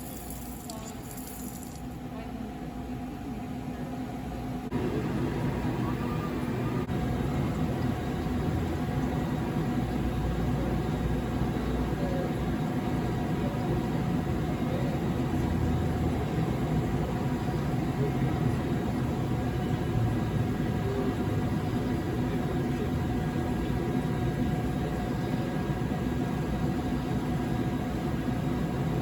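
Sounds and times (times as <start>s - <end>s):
drilling machine hum: 0.0s - 2.0s.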